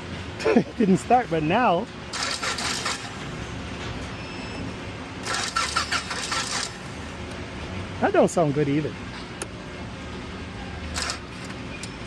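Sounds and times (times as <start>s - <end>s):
rapid rattling clicking burst: 2.1s - 3.1s, 5.2s - 6.8s, 10.9s - 11.5s.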